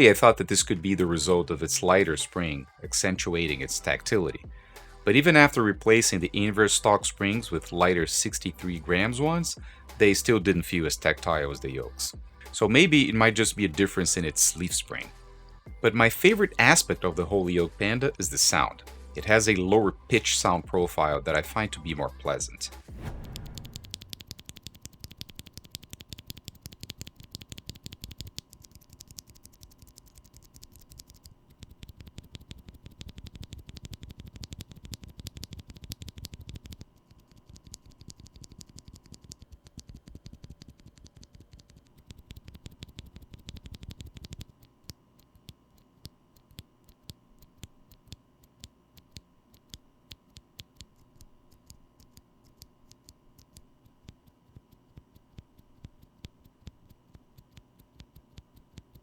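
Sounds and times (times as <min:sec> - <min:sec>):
typing on mechanical keyboard: 0:23.6 - 0:48.2.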